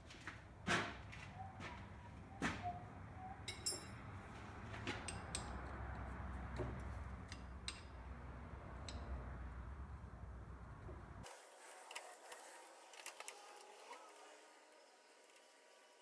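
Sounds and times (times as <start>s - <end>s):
metal parts clinking and knocking: 3.4s - 4.0s
short metallic ring: 3.5s - 4.0s.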